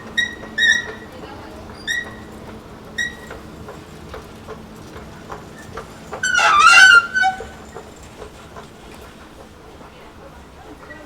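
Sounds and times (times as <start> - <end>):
escalator humming: 0.0 - 11.0
short squeak: 0.1 - 1.1, 1.8 - 2.3, 3.0 - 3.4, 6.2 - 7.8
loud shrill squeal: 6.2 - 7.6.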